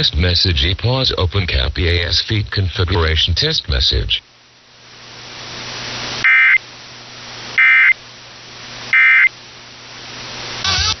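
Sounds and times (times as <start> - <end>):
steady hiss: 0.0 - 11.0
shrill digital data screeches: 10.6 - 11.0.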